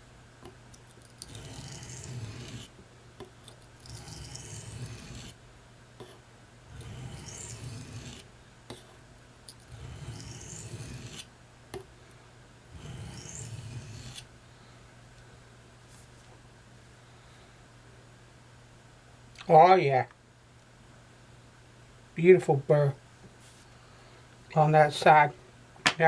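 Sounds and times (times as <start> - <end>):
knife scraping on sharpening stone: 1.2 - 2.7, 3.9 - 5.3, 6.8 - 8.2, 9.7 - 11.2, 12.8 - 14.2.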